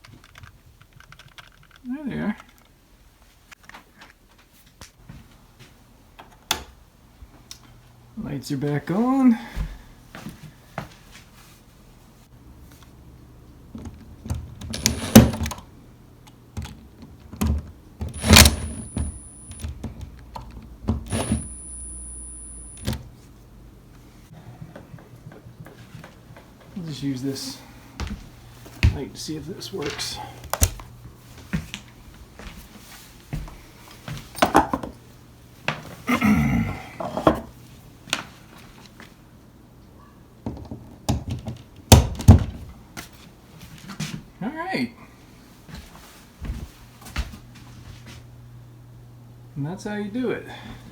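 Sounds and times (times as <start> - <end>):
faint high-pitched whine: 21.1 - 23.1.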